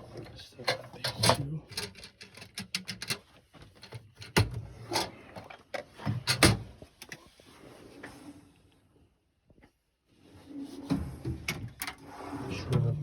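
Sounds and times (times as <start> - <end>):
metal drawers opening and shutting: 0.0 - 3.2, 3.9 - 7.2, 10.5 - 13.0.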